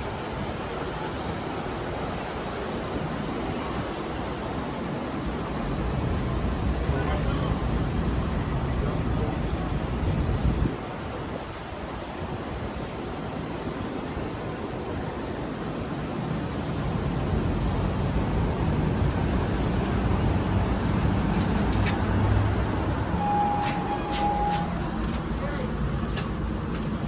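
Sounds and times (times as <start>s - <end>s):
city street traffic: 0.0s - 27.0s
short beep-like tone: 23.2s - 24.9s.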